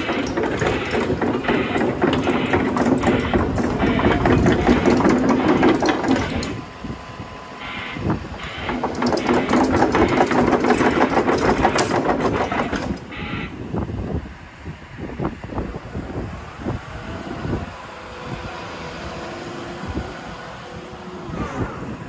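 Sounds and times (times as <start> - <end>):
fast mechanical clatter: 0.0 - 6.7, 8.3 - 13.2
excavator diesel engine running: 0.0 - 22.0.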